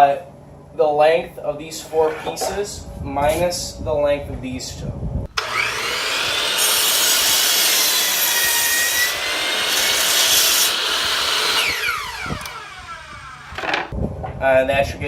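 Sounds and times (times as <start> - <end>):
power saw cutting wood: 5.3 - 13.9.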